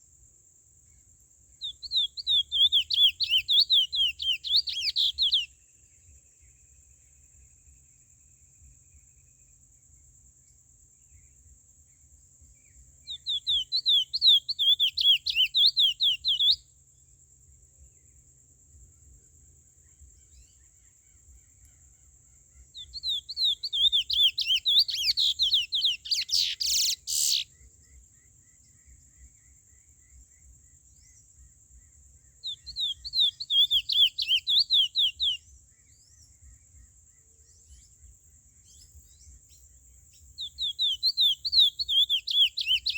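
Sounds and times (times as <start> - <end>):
seed-finch whistled song: 1.6 - 5.9, 12.5 - 16.8, 22.6 - 42.9.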